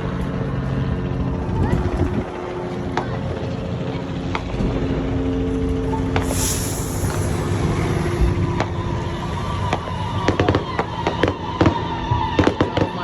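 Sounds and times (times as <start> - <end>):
short hiss: 6.2 - 8.2.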